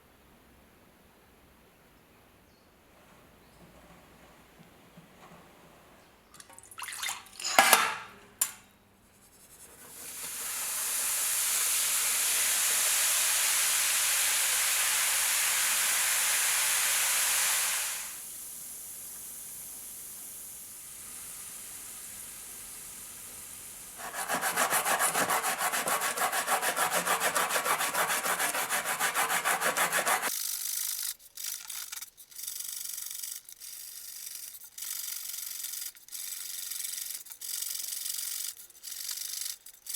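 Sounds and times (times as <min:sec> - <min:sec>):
steady hiss: 0:09.1 - 0:30.3
rubbing strokes on metal: 0:24.0 - 0:39.9.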